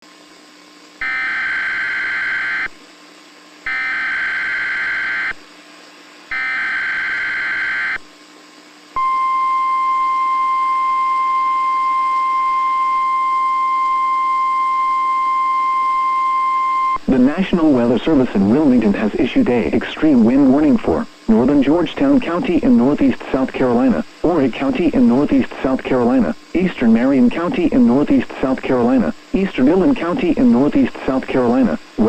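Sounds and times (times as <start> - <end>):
harsh buzzy data bursts: 1.0 - 2.8, 3.7 - 5.4, 6.3 - 8.1, 16.9 - 32.0
single-pitch warning alarm tone: 1.0 - 2.8, 3.6 - 5.4, 6.3 - 8.1, 9.0 - 17.0.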